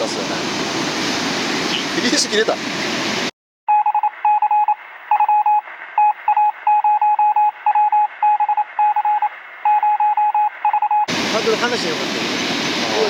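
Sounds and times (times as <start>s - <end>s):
electronic beeps: 3.7s - 11.1s.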